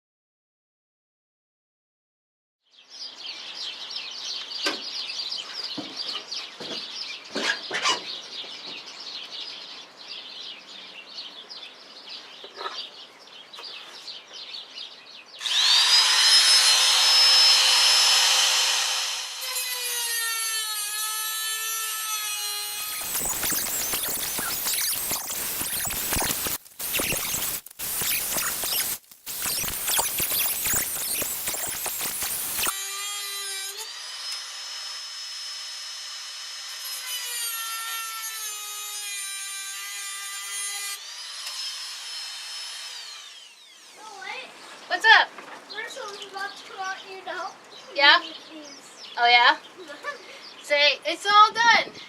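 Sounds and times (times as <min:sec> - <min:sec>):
harsh grinding: 0:15.4 - 0:20.2, 0:22.3 - 0:32.8
rotary tool high whine: 0:15.4 - 0:44.0
scratchy rubbing and scraping: 0:22.9 - 0:32.7.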